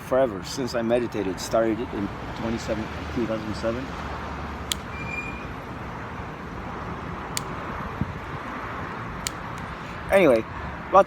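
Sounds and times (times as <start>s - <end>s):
road traffic noise: 0.0s - 11.0s
sharp clicks: 4.6s - 5.0s, 7.3s - 7.6s, 9.2s - 9.8s.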